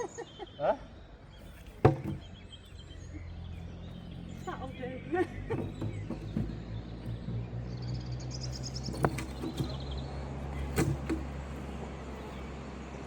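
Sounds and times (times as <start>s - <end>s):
sharp knocks: 1.8s - 2.3s, 5.5s - 7.4s, 8.8s - 9.8s, 10.6s - 11.7s.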